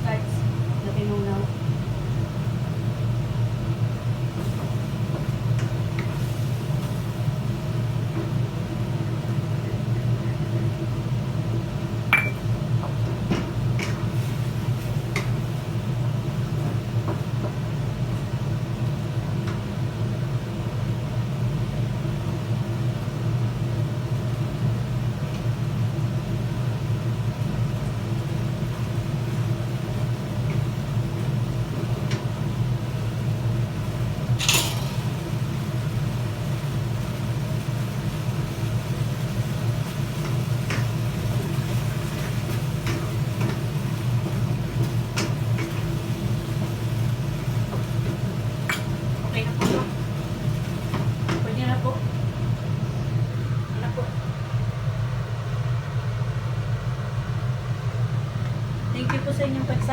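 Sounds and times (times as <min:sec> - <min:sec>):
low kitchen hum: 0:00.0 - 0:59.9
metal utensil clinking on pan: 0:12.2 - 0:12.4, 0:34.4 - 0:35.1.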